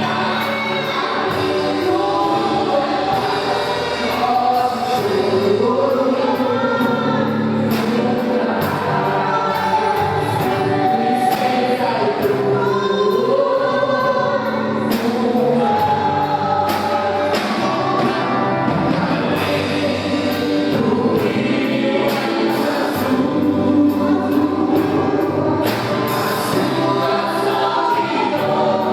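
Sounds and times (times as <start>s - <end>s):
instrumental accompaniment with beat: 0.0s - 13.4s, 14.0s - 28.9s
choir singing gospel: 0.0s - 28.9s.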